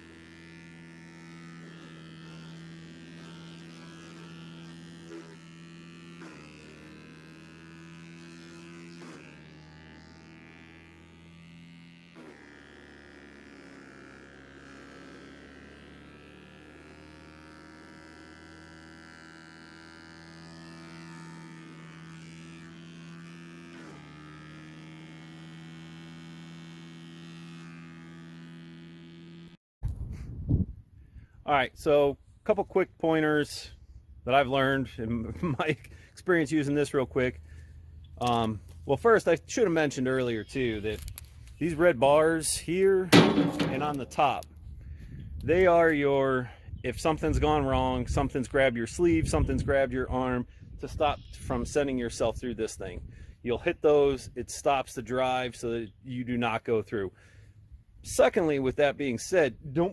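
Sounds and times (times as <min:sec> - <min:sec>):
wood chipper engine droning: 0:00.0 - 0:29.6, 0:33.6 - 0:45.9, 0:57.1 - 0:57.8
small knock: 0:43.2 - 0:44.4.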